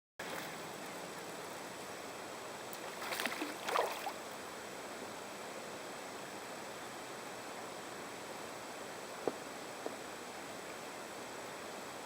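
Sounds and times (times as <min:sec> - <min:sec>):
small water splashes: 0:02.7 - 0:04.2.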